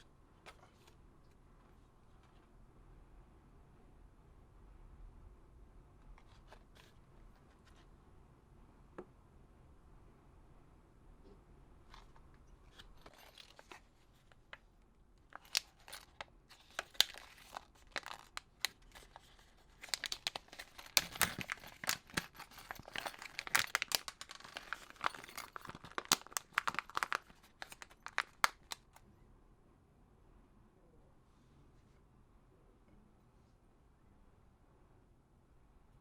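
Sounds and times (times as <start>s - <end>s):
thin material crinkling and tearing: 15.3s - 29.0s.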